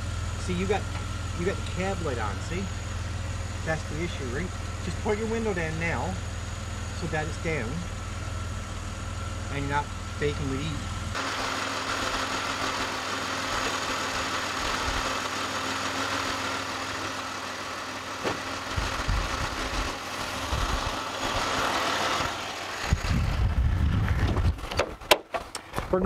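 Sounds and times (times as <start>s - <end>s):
car engine idling: 0.0s - 26.0s
low rumbling thumps: 18.2s - 21.0s, 22.8s - 25.0s.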